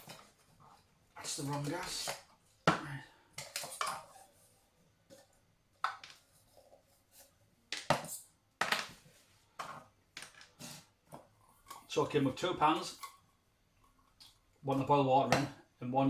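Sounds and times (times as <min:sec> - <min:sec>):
metal pans clinking: 0:03.4 - 0:04.3.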